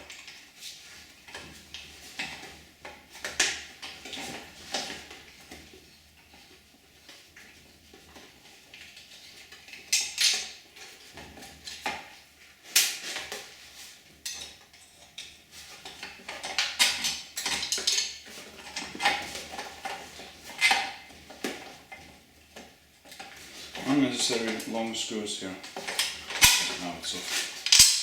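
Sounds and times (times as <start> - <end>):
hand tools clinking on metal: 25.9 - 28.0.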